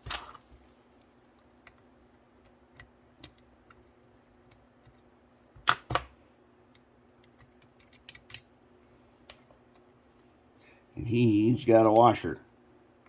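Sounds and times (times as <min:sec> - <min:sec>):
small parts clicking and tapping: 0:00.0 - 0:06.0, 0:06.7 - 0:08.5.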